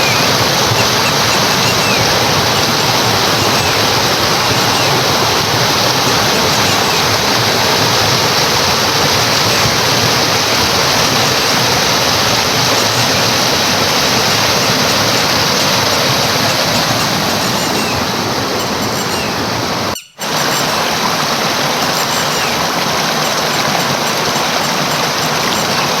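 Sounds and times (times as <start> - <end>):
stream water rushing: 0.0 - 26.0.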